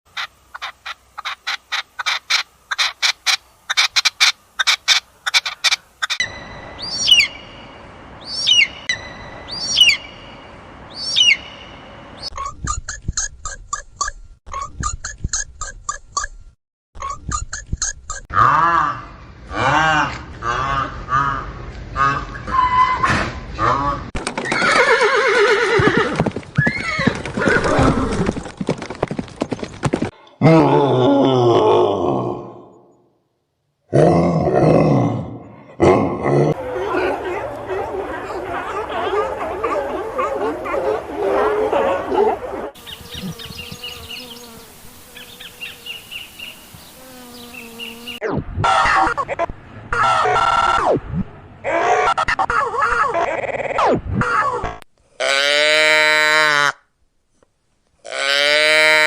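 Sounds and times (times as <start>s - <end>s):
steady background hiss: 0.1s - 12.2s, 36.6s - 48.2s
animal chirping calls: 0.2s - 6.2s, 8.3s - 10.2s, 11.0s - 13.0s
horse whinnying: 24.5s - 28.3s.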